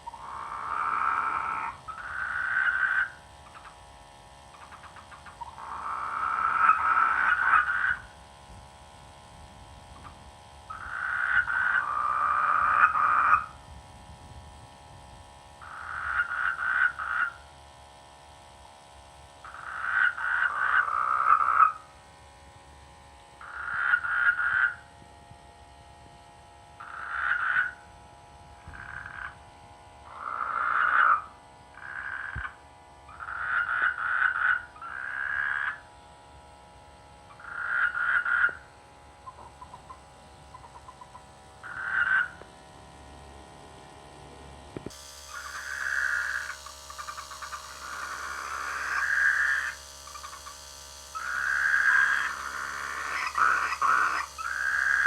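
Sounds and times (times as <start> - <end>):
frogs croaking: 0.0 - 8.2, 9.8 - 13.6, 15.5 - 17.7, 19.3 - 21.9, 23.4 - 25.0, 26.7 - 27.9, 28.6 - 36.0, 37.2 - 42.7, 44.8 - 55.0
faint steady drone: 0.0 - 55.0.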